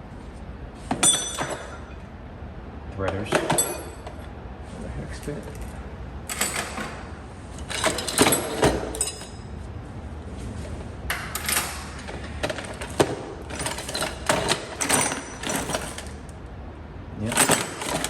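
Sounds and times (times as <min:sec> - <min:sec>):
metal tools clinking and clattering: 0:00.9 - 0:02.0, 0:03.2 - 0:04.3, 0:05.2 - 0:09.5, 0:11.1 - 0:16.2, 0:17.2 - 0:18.0.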